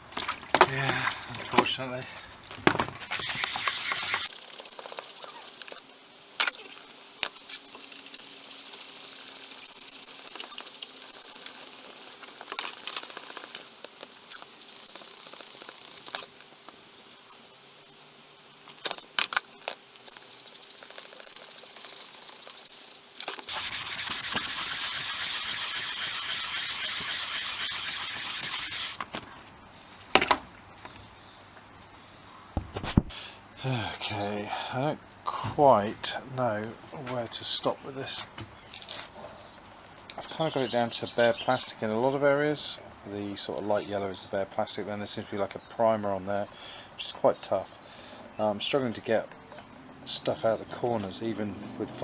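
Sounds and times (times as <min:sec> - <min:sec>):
sandpaper rubbing on plastic: 0:03.0 - 0:05.6, 0:23.4 - 0:29.0.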